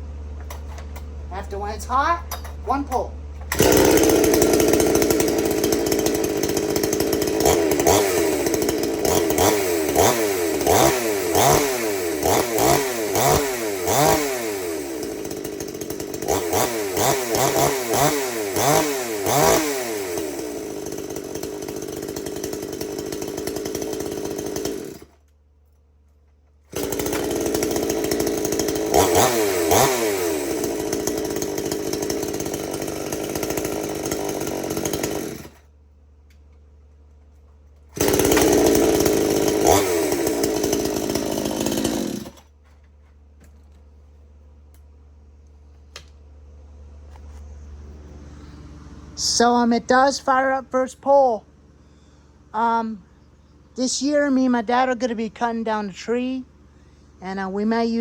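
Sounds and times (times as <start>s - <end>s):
chainsaw running and revving: 3.4s - 25.2s, 26.7s - 35.7s, 38.0s - 42.5s, 48.1s - 51.4s, 52.5s - 53.0s, 53.8s - 58.0s.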